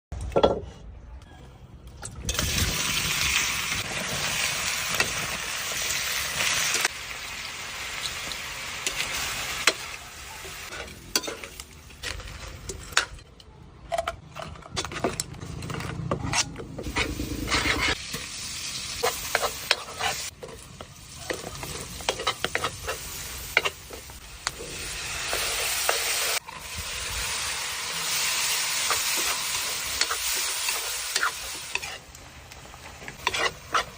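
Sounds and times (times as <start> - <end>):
seafood sizzling in a pan: 2.6 - 11.3, 17.5 - 32.1
utensil scraping and clicking on pan: 33.1 - 33.9.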